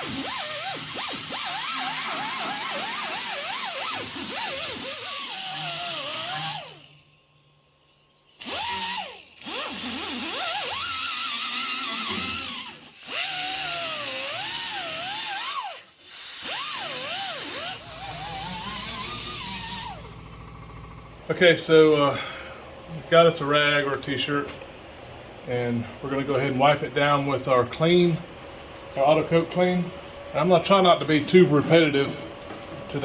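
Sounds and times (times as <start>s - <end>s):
power grinder grinding metal: 0.0s - 7.1s, 8.3s - 21.5s.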